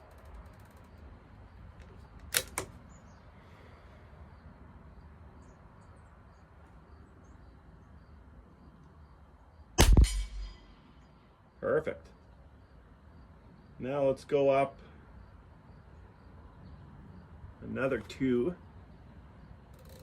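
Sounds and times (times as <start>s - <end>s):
sharp clicks: 1.8s - 2.8s
rifle shot with echo: 9.8s - 10.8s.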